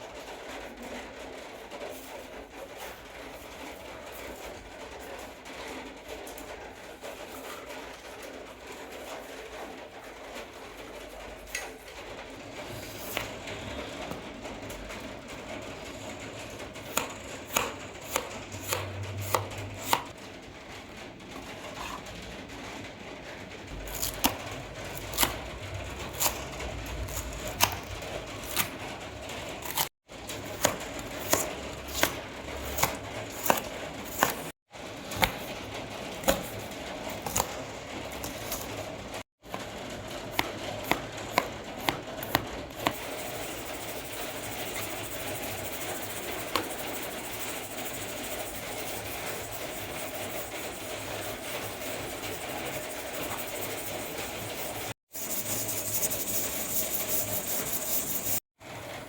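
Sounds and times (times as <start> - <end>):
knife chopping on cutting board: 16.9 - 20.1, 23.9 - 25.4, 26.1 - 28.8, 29.6 - 34.5, 35.2 - 35.5, 36.2 - 38.8, 40.4 - 58.4.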